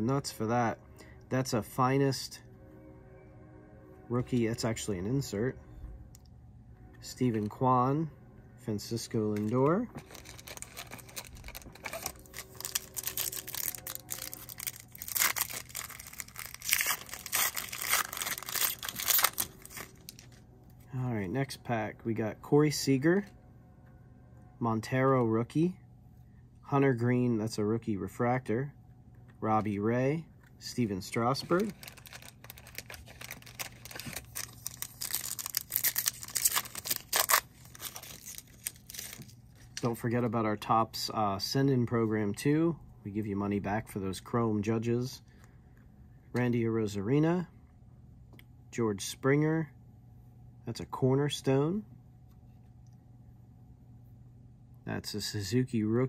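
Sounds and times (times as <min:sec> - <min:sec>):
cards being handled: 0:09.2 - 0:20.4, 0:31.3 - 0:39.9
wrapper tearing and crinkling: 0:09.4 - 0:20.4, 0:31.4 - 0:39.8.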